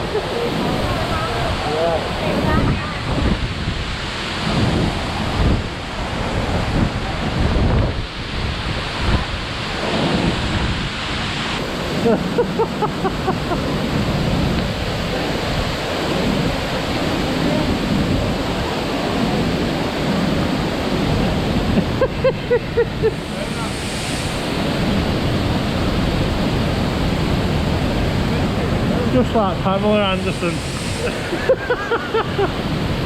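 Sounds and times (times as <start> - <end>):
waterfall rushing: 0.0 - 33.0
wind buffeting microphone: 0.0 - 33.0
person's voice: 29.0 - 30.6.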